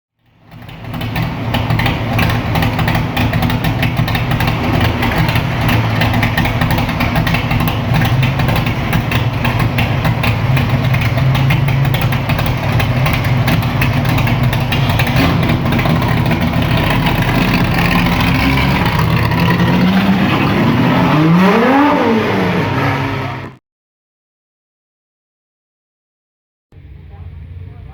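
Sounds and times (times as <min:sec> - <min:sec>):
car engine idling and revving: 0:00.2 - 0:23.6, 0:26.8 - 0:27.9.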